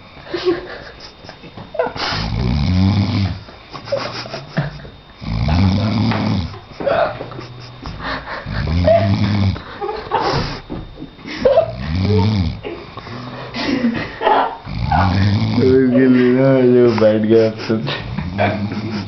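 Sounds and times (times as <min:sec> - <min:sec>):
person snoring loudly: 0:02.1 - 0:03.5, 0:05.2 - 0:09.6, 0:11.6 - 0:13.6, 0:14.6 - 0:16.1, 0:18.0 - 0:19.0.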